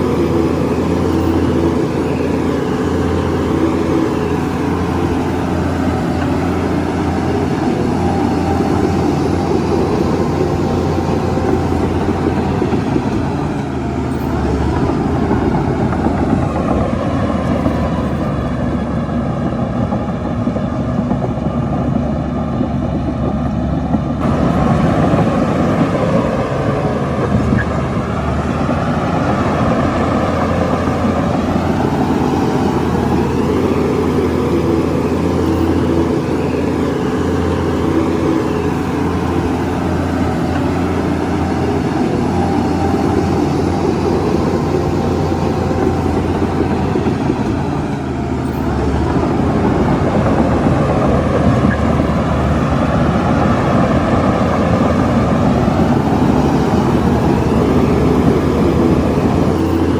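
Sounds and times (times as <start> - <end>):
bulldozer engine: 0.0 - 59.9
dump trucks: 0.0 - 59.9.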